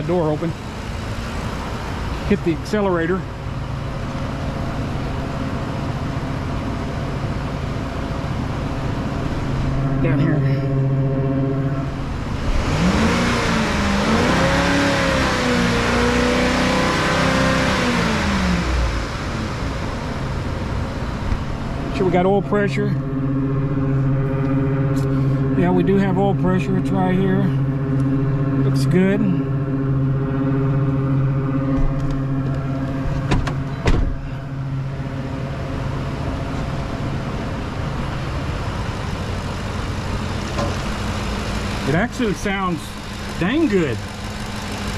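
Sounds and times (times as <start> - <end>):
truck engine revving: 0.0 - 22.3, 23.0 - 44.9
sharp knocks: 33.0 - 34.2.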